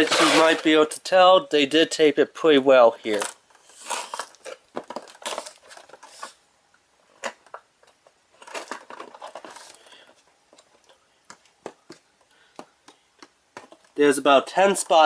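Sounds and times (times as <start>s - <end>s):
cardboard packaging rustling: 0.0s - 0.9s, 3.0s - 6.4s, 7.1s - 14.0s.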